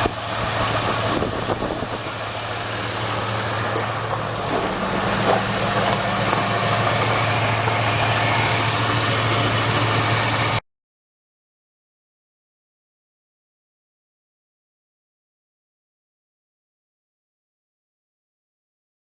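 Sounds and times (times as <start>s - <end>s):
car engine idling: 0.0s - 10.6s.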